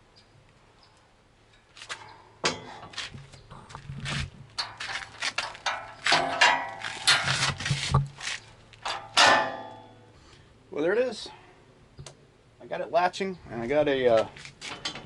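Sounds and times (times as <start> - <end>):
metal clanks and clicks: 1.9 - 3.8, 4.6 - 8.2, 8.8 - 9.9, 14.5 - 15.0.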